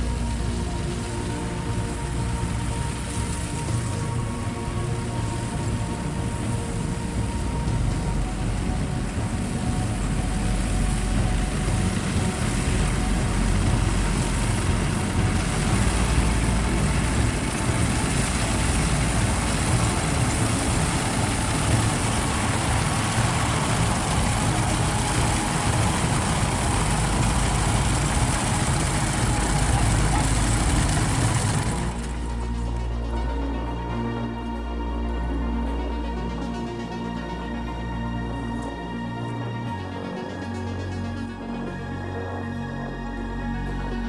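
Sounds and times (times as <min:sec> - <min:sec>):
combine harvester engine idling: 0:00.0 - 0:33.5.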